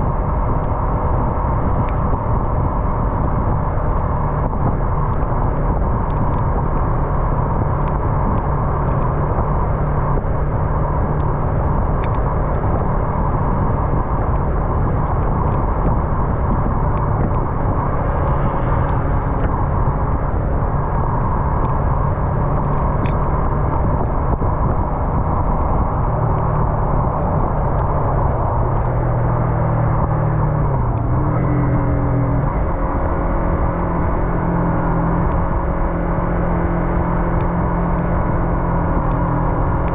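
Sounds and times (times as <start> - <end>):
road noise: 0.0 - 39.9
wind rush: 0.0 - 39.9
motorcycle engine running: 11.4 - 27.7.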